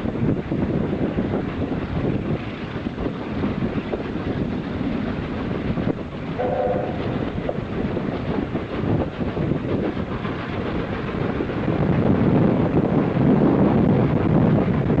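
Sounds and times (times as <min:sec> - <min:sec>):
steam train rumble: 0:00.0 - 0:15.0
wheels clacking on rails: 0:00.0 - 0:15.0
train whistle: 0:06.4 - 0:07.4.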